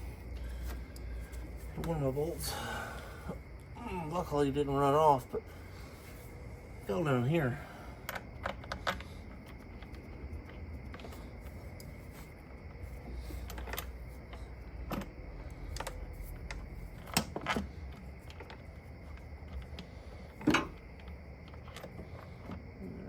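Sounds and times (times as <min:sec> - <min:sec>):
faint low hum: 0:00.0 - 0:23.0.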